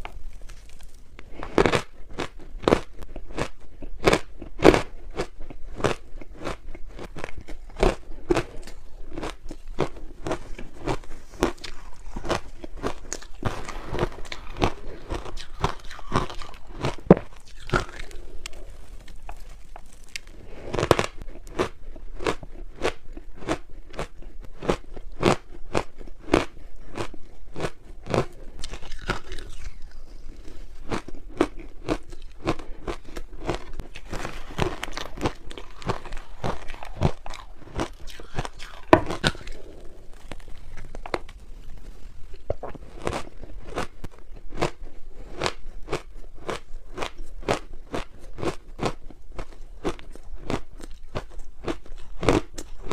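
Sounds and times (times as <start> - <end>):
person chewing crunchy ice: 0.0 - 52.9.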